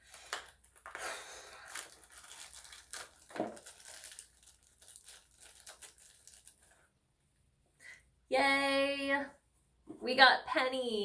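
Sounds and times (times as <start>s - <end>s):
packaging being torn and crinkled: 0.0s - 6.8s.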